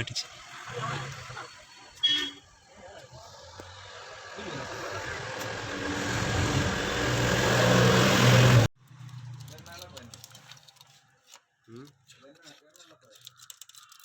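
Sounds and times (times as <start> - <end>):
engine running: 2.6 - 9.5.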